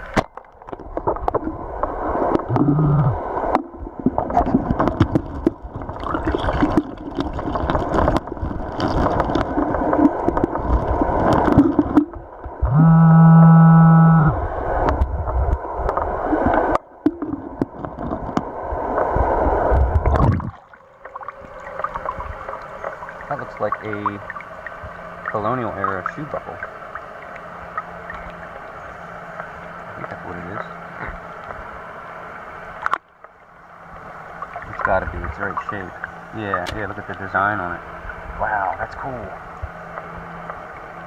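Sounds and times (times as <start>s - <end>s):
metal detector tone: 12.6s - 14.4s.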